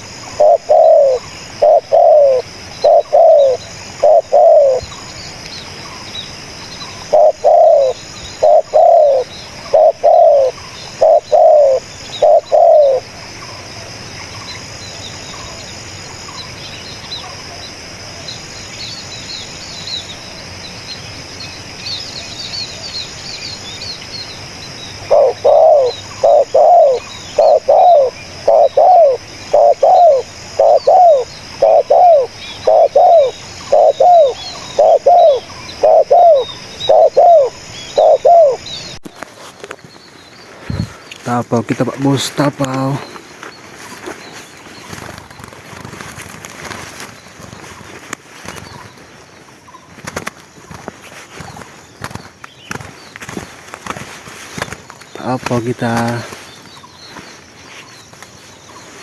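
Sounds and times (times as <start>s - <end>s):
dove cooing: 0.0s - 5.2s, 7.0s - 13.2s, 25.0s - 39.0s
faint small birds chirping: 0.0s - 59.0s.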